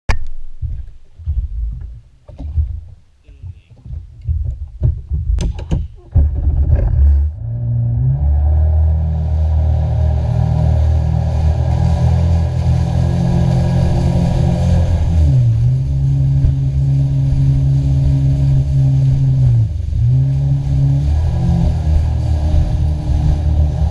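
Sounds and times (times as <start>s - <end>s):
sharp knocks: 0.1s - 7.3s
low rumbling: 0.1s - 23.9s
jet ski engine droning: 6.3s - 23.9s.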